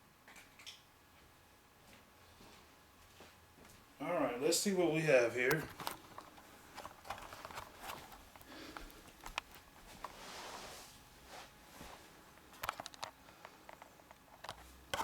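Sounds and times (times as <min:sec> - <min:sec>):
handling clicks and rustles: 0:05.4 - 0:10.2, 0:12.3 - 0:15.0
soft breath: 0:08.4 - 0:09.2.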